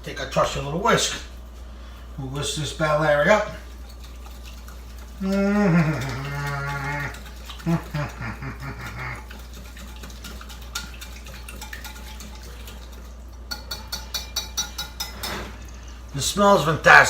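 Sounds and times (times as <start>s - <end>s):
whisk clicking against a bowl: 3.8s - 8.2s, 9.2s - 15.2s.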